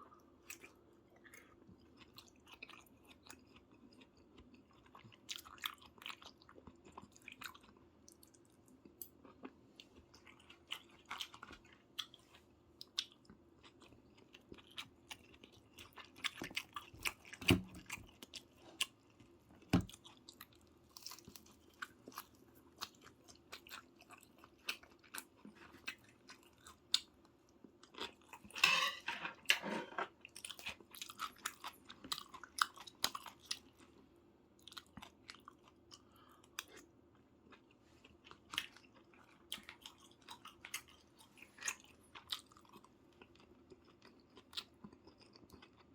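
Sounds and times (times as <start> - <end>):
person chewing and smacking: 0.3 - 28.6, 30.2 - 33.9, 34.6 - 45.9.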